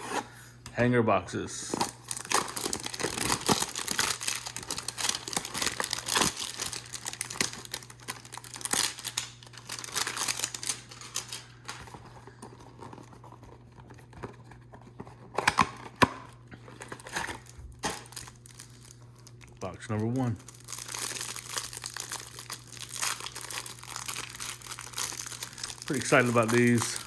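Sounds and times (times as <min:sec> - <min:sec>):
packaging ripping: 0:01.7 - 0:12.0, 0:16.7 - 0:27.0
packaging crinkling: 0:01.7 - 0:27.0.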